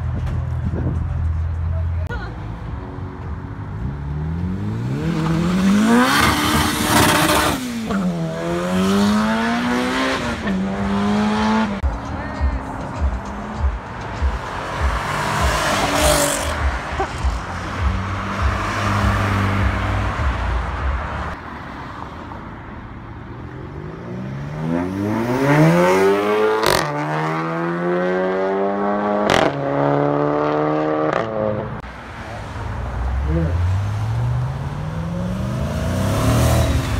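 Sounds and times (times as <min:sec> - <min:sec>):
car engine accelerating hard: 0:04.0 - 0:11.8, 0:33.2 - 0:36.9.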